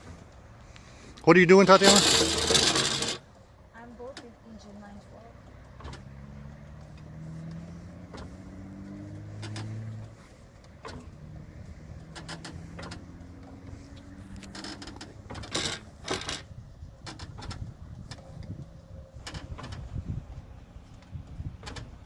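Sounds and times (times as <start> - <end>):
engine turned over by hand: 1.3 - 3.3, 6.8 - 18.3.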